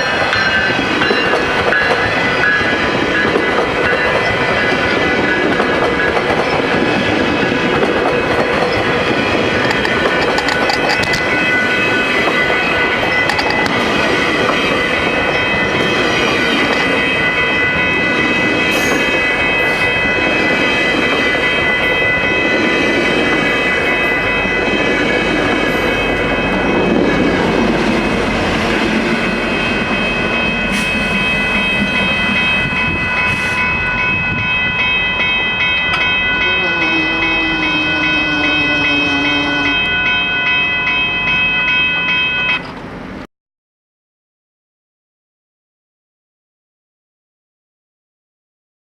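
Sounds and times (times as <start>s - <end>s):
train wheels clacking over rails: 0.0s - 34.4s
train rumble: 0.0s - 43.2s
high ringing tones: 8.2s - 42.7s.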